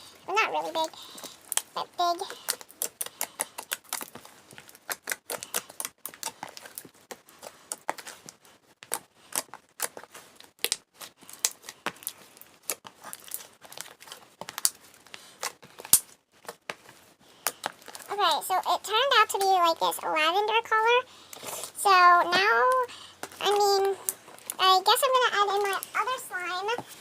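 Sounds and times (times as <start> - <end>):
slime clicking and popping: 1.2 - 7.1, 8.8 - 14.8.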